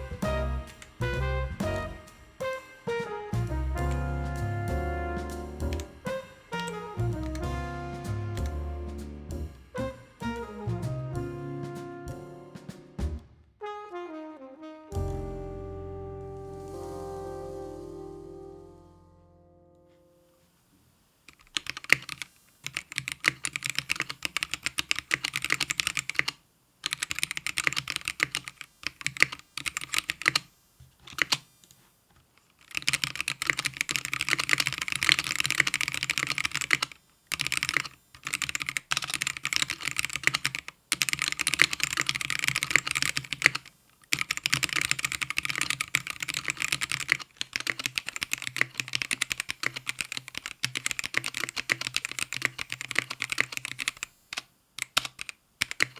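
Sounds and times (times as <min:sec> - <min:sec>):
mechanical keyboard typing: 0:21.4 - 0:31.4, 0:32.6 - 0:55.9.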